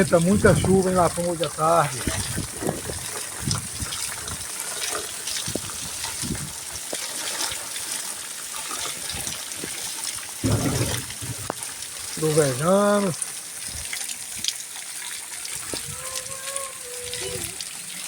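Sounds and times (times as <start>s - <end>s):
heavy rain pouring: 0.0s - 18.0s
water dripping: 0.0s - 18.0s
water gushing and splashing: 0.0s - 18.0s
brief low thud: 10.4s - 11.4s.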